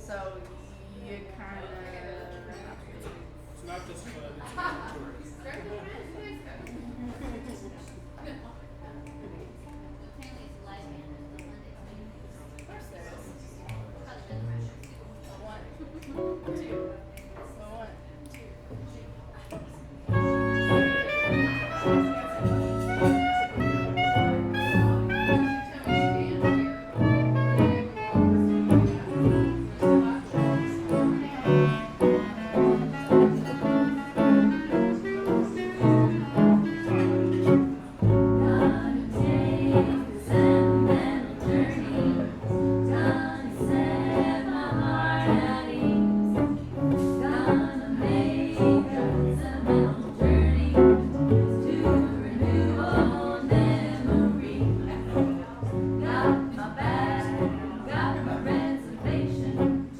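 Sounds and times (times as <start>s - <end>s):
walking bass: 18.3s - 59.9s
live band playing: 20.1s - 41.0s.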